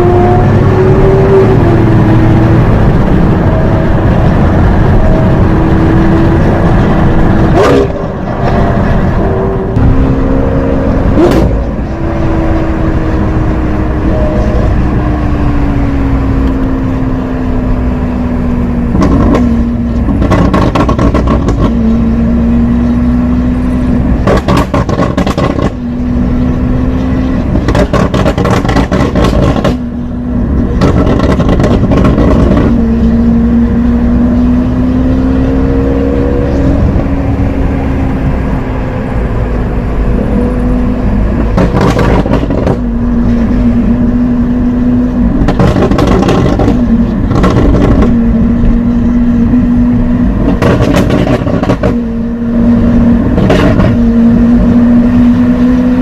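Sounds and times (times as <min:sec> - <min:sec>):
car engine at low revs: 0:00.0 - 0:56.0
exhaust crackling: 0:18.4 - 0:34.3, 0:36.5 - 0:55.4.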